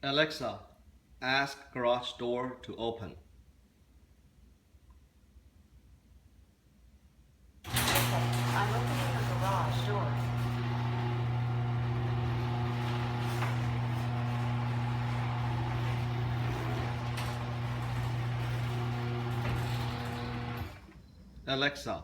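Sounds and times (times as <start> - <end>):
garage door opener motor hum: 7.7 - 21.2.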